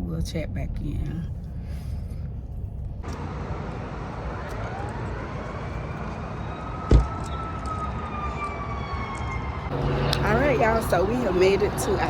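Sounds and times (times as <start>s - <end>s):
road traffic noise: 0.0s - 12.0s
distant siren wailing: 3.0s - 12.0s.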